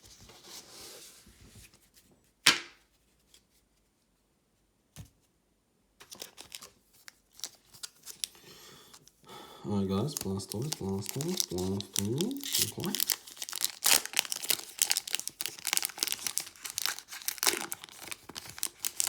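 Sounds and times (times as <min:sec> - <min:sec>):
trading cards rustling: 0:10.0 - 0:19.0.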